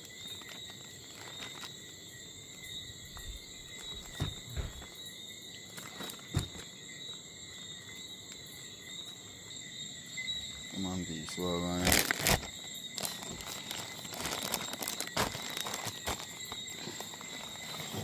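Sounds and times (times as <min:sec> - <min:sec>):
night insects calling: 0:00.0 - 0:18.0
soft handling knocks: 0:03.1 - 0:04.9, 0:06.0 - 0:06.7.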